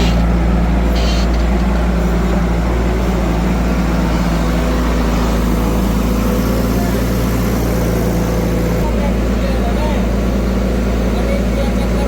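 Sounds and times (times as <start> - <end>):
heavy machine engine humming: 0.0 - 12.0.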